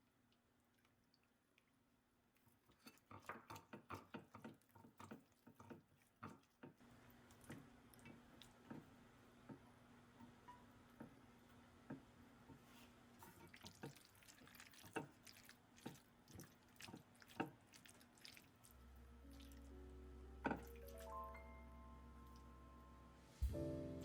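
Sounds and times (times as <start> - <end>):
soft music with low drone: 18.8 - 24.0.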